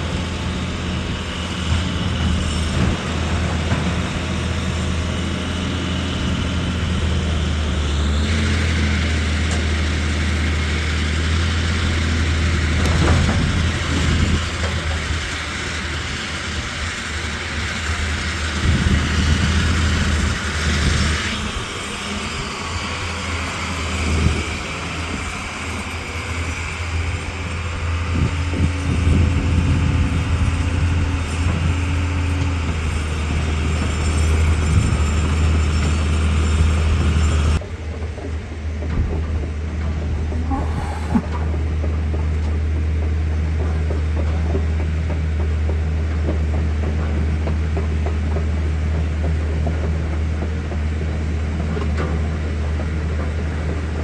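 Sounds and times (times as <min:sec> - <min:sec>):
vehicle engine droning: 0:00.0 - 0:54.0
hiss and rattle: 0:40.3 - 0:42.0.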